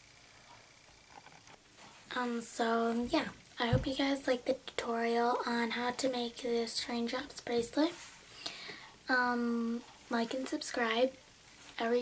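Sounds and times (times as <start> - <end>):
soft breath: 7.9 - 9.0.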